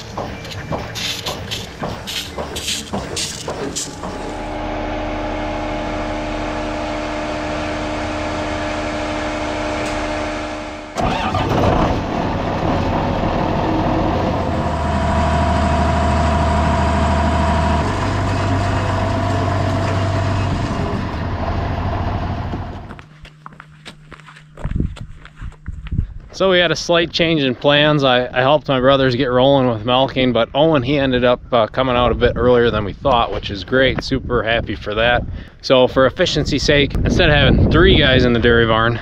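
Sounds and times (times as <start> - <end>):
rough loud machine sound: 0.0 - 23.1
machine motor humming: 0.0 - 24.7.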